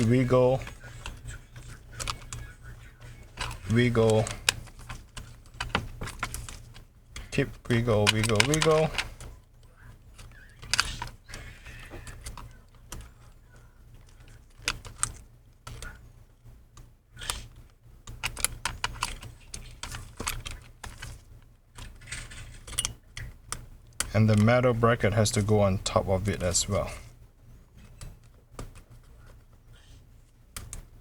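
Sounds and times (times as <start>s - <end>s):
low steady hum: 0.0s - 31.0s
small clicks and taps of cables: 30.5s - 30.9s.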